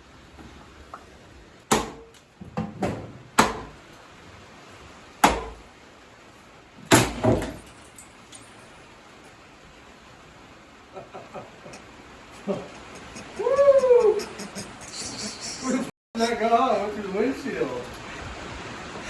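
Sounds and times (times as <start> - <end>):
sledgehammer striking metal: 1.7 - 2.2.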